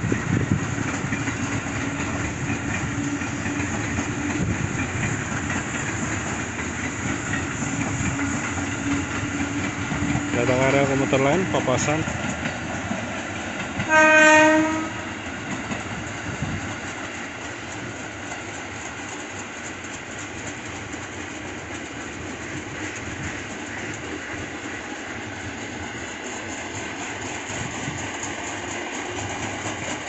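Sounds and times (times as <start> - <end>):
train wheels rumbling on rails: 0.0 - 30.0
train horn: 13.8 - 15.2.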